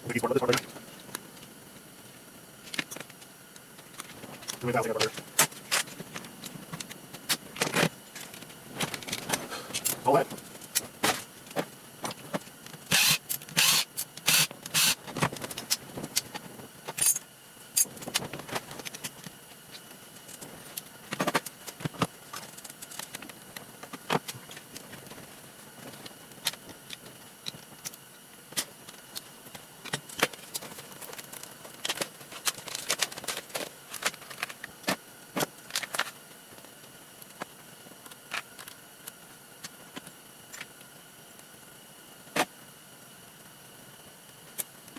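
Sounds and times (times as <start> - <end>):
small parts and tools clattering: 16.9 - 19.2.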